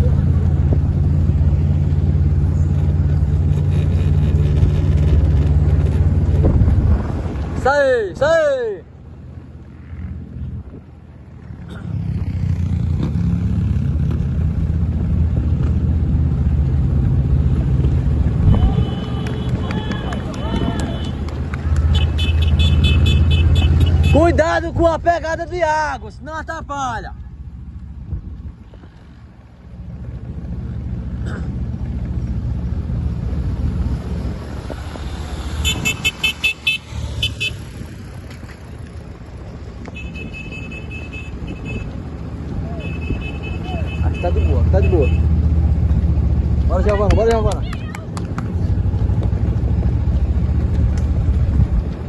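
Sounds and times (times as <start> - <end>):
vehicle engine rumbling: 0.0 - 52.0
vehicle engine running: 42.0 - 52.0.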